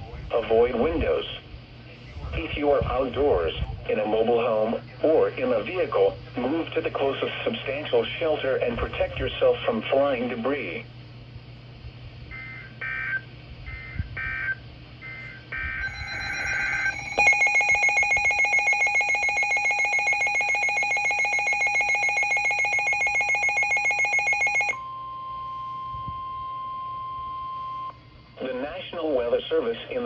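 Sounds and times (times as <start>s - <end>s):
steady warning tone: 12.3s - 28.4s
digital data tone bursts: 15.1s - 24.8s
pulsing multi-tone alert: 15.1s - 24.8s.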